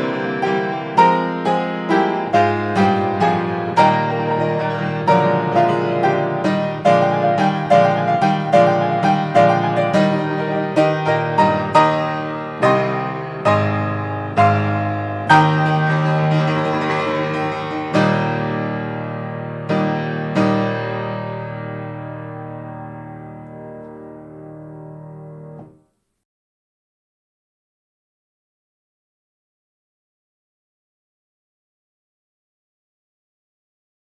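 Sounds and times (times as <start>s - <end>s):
piano playing a waltz: 0.0s - 25.8s.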